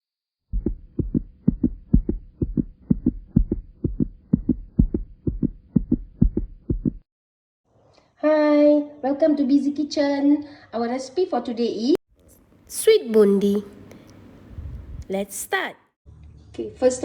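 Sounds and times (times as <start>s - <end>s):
rhythmic low thumping: 0.5s - 7.0s.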